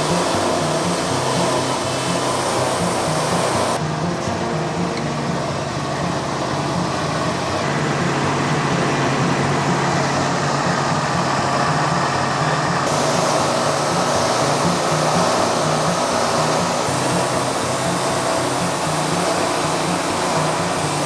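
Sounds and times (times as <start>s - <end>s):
saw cutting log: 0.0s - 3.8s, 11.2s - 21.0s
sawmill engine running: 0.0s - 21.0s.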